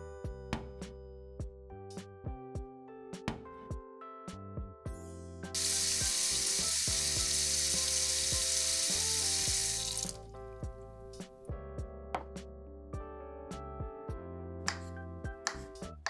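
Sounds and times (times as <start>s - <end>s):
food frying in a pan: 5.6s - 10.2s.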